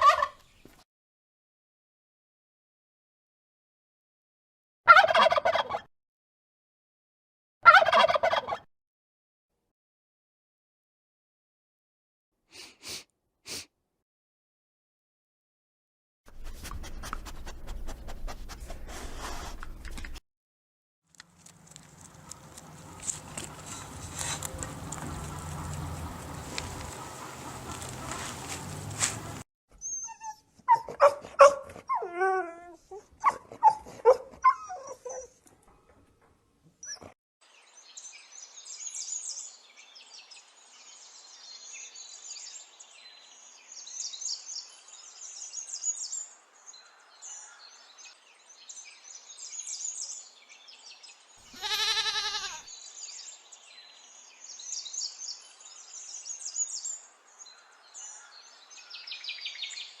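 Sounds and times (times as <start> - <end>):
loud drawn-out animal call: 22.2 - 29.4, 51.6 - 52.7
dog barking and yelping: 30.0 - 35.4.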